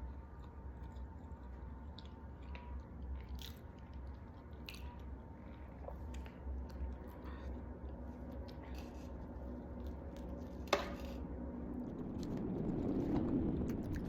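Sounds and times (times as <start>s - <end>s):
person chewing cookie crunches: 0.0s - 13.0s
steady low hum: 0.0s - 14.0s.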